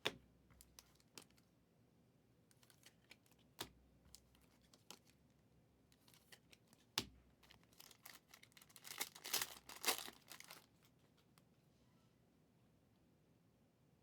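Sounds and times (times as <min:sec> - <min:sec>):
foil wrapper tearing and crinkling: 0:07.4 - 0:10.7.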